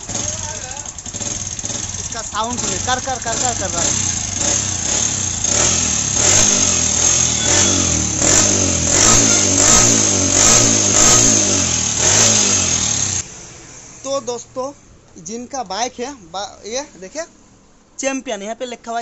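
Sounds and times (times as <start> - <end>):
motorcycle engine throttle blips: 0.0 - 14.4
engine rattling: 0.0 - 16.2.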